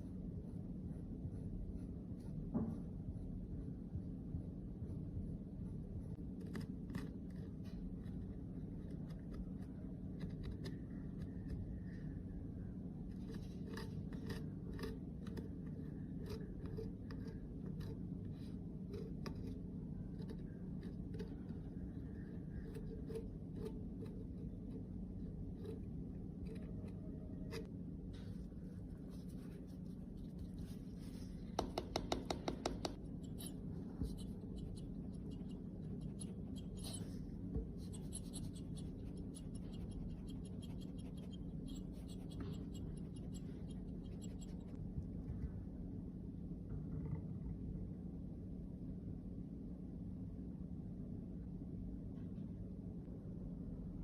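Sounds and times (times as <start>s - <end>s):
steady low hum: 0.0s - 54.0s
tools scratching and tapping: 13.1s - 27.7s, 30.1s - 44.8s.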